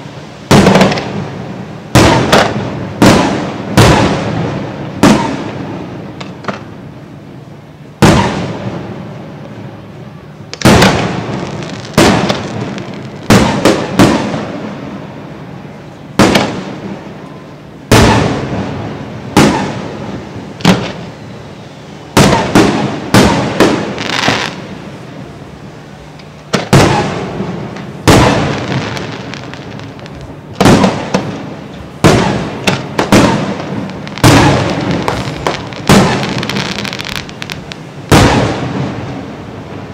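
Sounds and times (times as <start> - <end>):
fireworks bursting: 0.0 - 39.9
fireworks crackling: 0.0 - 39.9.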